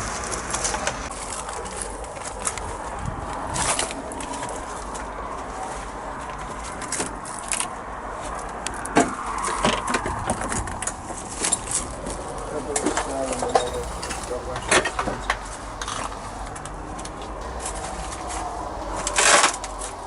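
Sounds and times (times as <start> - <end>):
steady low rumble: 11.7 - 20.0
birds calling: 13.3 - 20.0.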